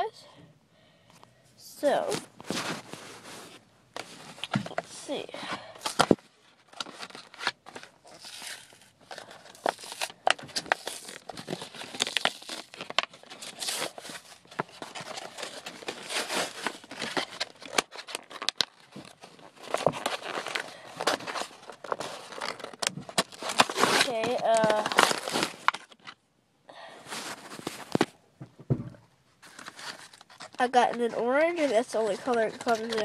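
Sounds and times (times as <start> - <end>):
plastic packaging crinkling and tearing: 1.8 - 26.2, 29.4 - 33.0
clicks and rustles: 27.2 - 33.0.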